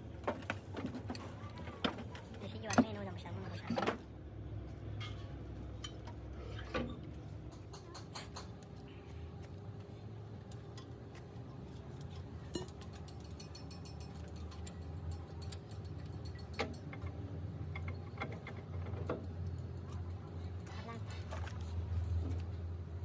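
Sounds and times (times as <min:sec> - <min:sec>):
metallic clicking of tools: 0:12.0 - 0:17.2.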